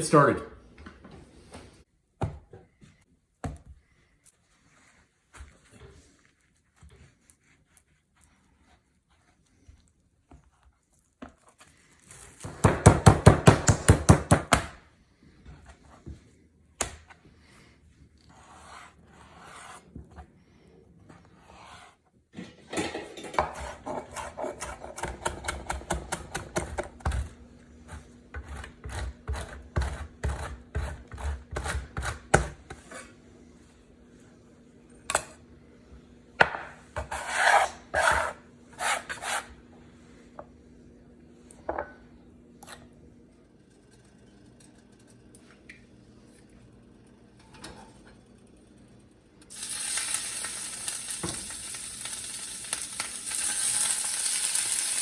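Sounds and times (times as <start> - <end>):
knife scraping and chopping: 18.2 - 20.2, 23.2 - 33.2, 36.4 - 39.6.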